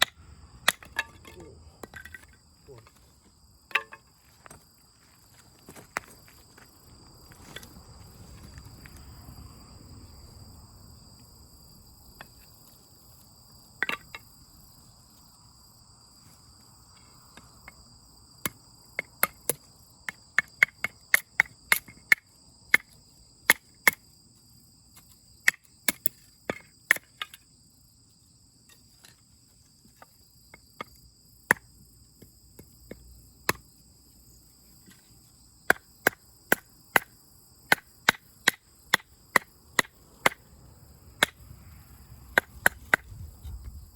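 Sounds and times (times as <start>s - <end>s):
insect trill: 0.0s - 43.9s
firewood chopping knocks: 42.4s - 43.2s.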